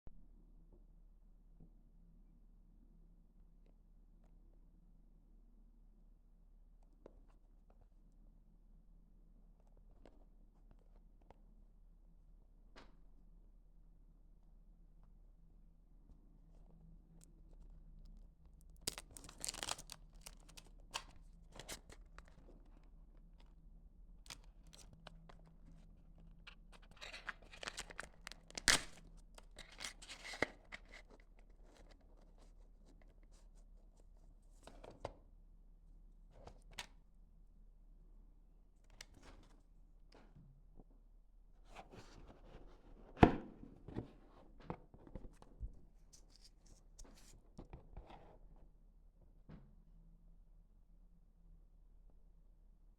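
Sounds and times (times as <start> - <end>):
packaging crinkling and tearing: 18.6 - 22.4, 24.3 - 25.4, 26.8 - 31.2.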